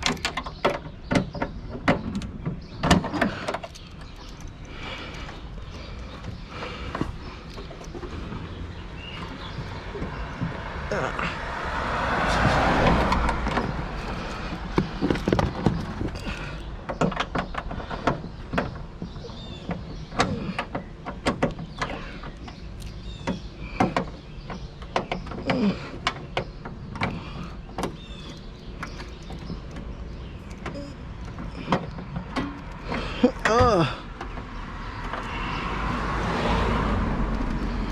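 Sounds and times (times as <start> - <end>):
hand tools clicking and knocking: 0.0 - 11.3, 12.2 - 35.4.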